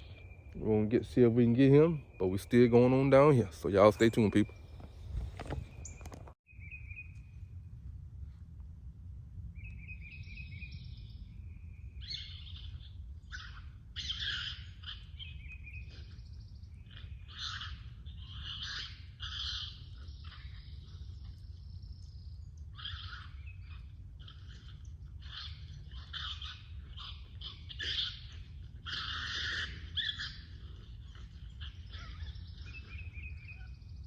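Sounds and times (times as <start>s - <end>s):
steady low rumble: 6.6s - 34.0s
harsh squawking bird calls: 12.0s - 34.0s.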